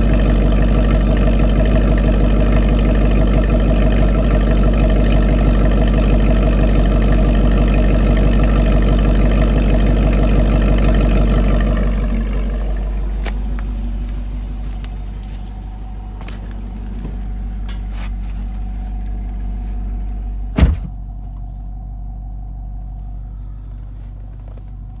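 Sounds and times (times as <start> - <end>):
car engine running: 0.0 - 25.0
sharp bang: 20.6 - 21.0.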